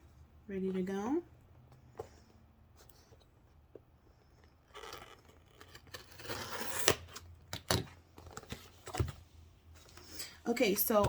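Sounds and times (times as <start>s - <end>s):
blade slicing packing tape: 4.8s - 7.9s.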